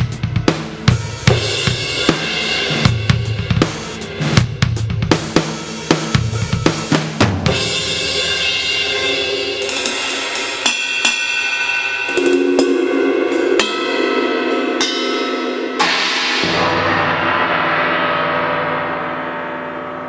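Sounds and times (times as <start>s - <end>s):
cymbal strikes ringing: 7.5s - 20.0s.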